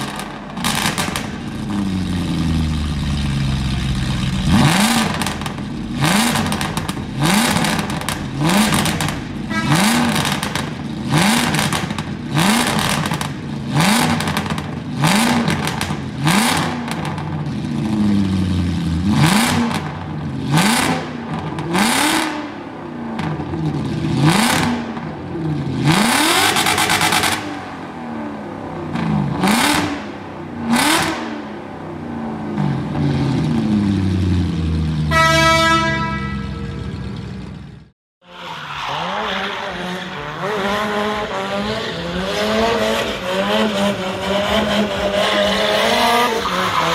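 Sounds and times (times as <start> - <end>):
exhaust pops and crackles: 0.0 - 1.8, 4.3 - 9.4, 10.0 - 13.4, 14.0 - 17.3
car engine revving: 0.0 - 46.9.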